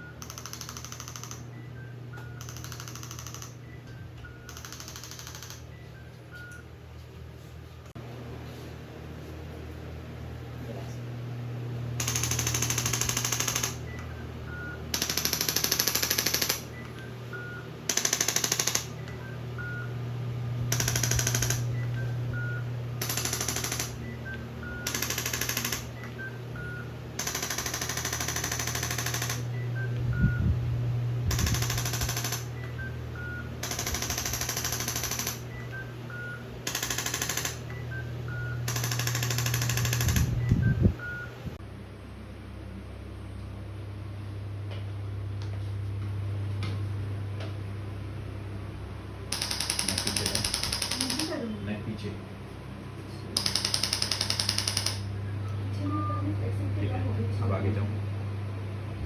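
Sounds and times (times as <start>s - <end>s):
electric massager buzzing: 0.0s - 1.5s, 2.2s - 3.6s, 4.3s - 5.7s, 11.4s - 17.2s, 17.8s - 35.7s, 36.6s - 41.0s, 53.4s - 57.8s
steady low hum: 0.0s - 59.0s.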